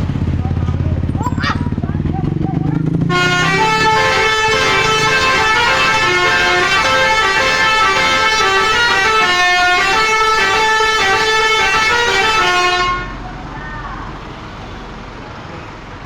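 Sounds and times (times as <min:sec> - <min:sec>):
bus musical horn tune: 0:03.1 - 0:13.2.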